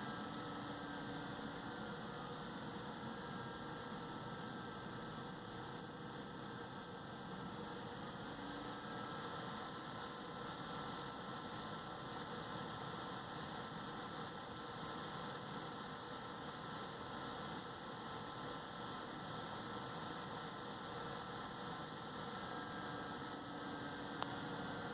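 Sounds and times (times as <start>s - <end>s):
cooler fan whirring: 0.0s - 5.0s, 19.3s - 24.9s
faint high whine: 0.0s - 24.9s.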